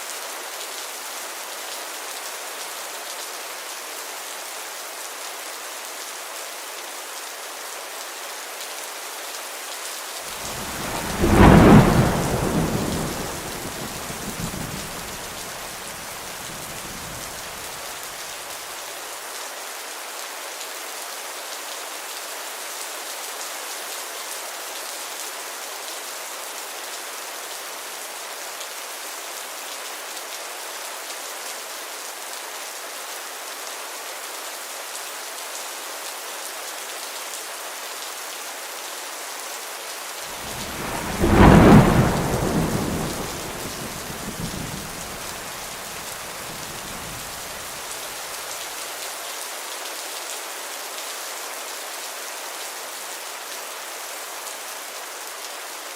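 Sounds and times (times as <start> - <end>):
heavy rain: 0.0 - 55.9
thunderclap rumbling: 10.3 - 15.8, 40.3 - 47.8.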